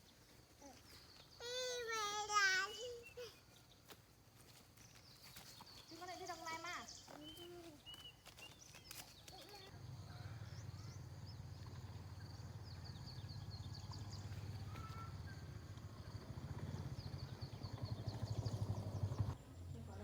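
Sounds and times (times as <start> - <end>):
small birds chirping: 0.0 - 20.0
low pulsing engine hum: 9.7 - 20.0.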